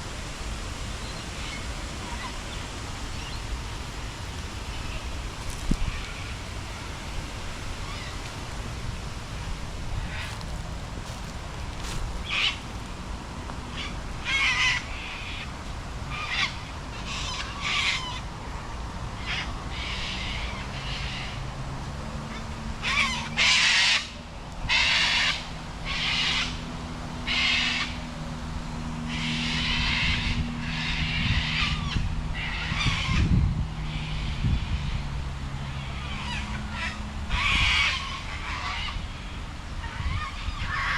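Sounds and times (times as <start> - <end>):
low engine hum: 0.0 - 40.9
birds calling: 1.0 - 15.4.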